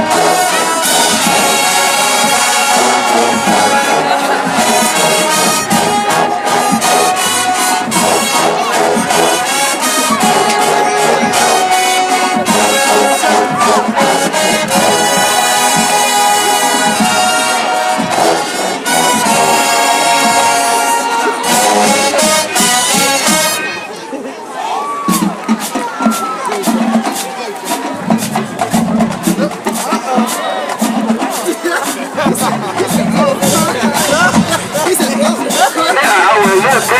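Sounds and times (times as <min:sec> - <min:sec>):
brass band sustained chords: 0:00.0 - 0:24.0, 0:27.9 - 0:36.9
crowd voices: 0:00.0 - 0:36.9.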